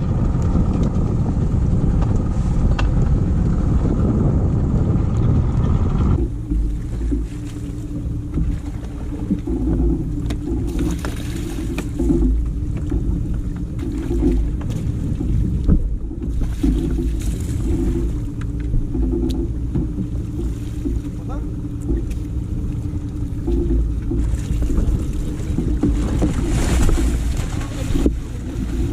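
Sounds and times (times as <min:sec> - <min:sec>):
boat motor humming: 0:00.0 - 0:28.9
knocks against hull: 0:06.2 - 0:28.9.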